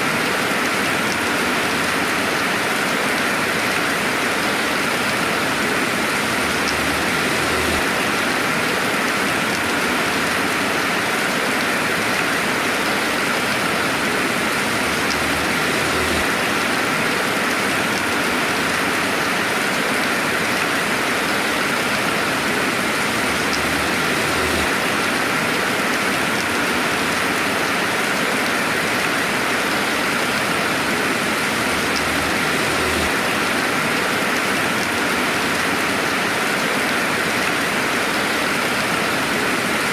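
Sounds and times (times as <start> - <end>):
steady rain hiss: 0.0 - 39.9
raindrop ticking: 4.5 - 10.4, 11.6 - 19.0, 21.8 - 27.4, 31.4 - 35.8.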